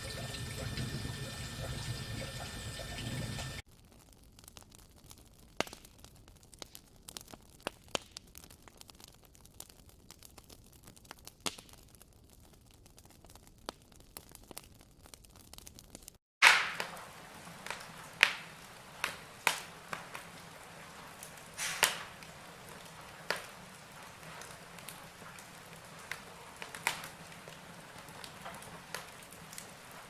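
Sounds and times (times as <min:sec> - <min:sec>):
low fire hiss: 0:00.0 - 0:03.6, 0:16.4 - 0:30.0
campfire crackling and popping: 0:00.0 - 0:30.0.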